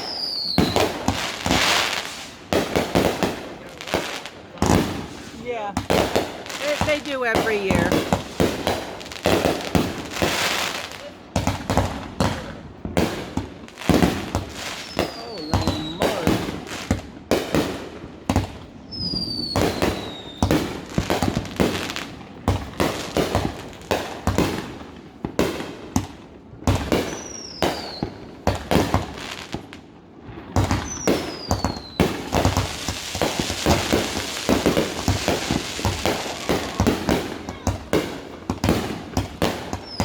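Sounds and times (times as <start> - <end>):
falling firework whistles: 0.0 - 2.4, 13.9 - 16.5, 18.9 - 20.7, 26.8 - 29.1, 30.6 - 38.0, 39.5 - 40.0
dense firework crackling: 0.0 - 40.0
fireworks bangs: 0.0 - 40.0.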